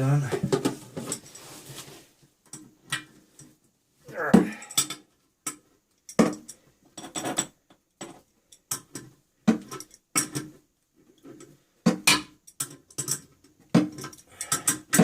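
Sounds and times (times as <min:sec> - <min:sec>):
metal hardware clinking and knocking: 0:04.5 - 0:10.6, 0:11.2 - 0:15.0.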